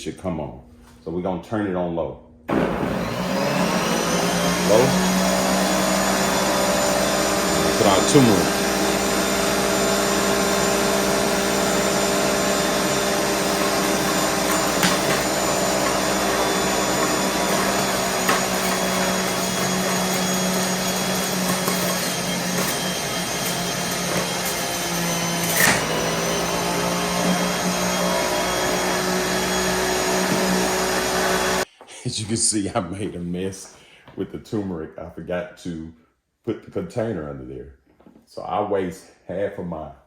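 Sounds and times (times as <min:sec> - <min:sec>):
juicer motor whining: 0:02.5 - 0:31.6.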